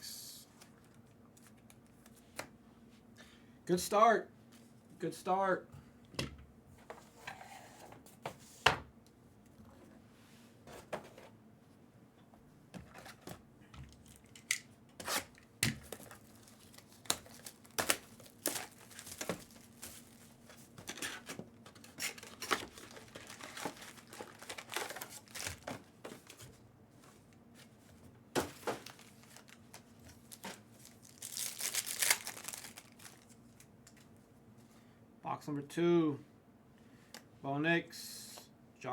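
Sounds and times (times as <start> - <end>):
plastic wrap crinkling and ripping: 15.1 - 25.9, 28.6 - 33.7.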